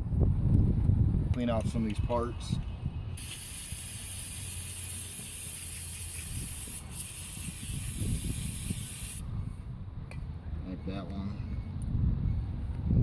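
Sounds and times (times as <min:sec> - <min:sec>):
aerosol spray hissing: 0:03.2 - 0:09.2.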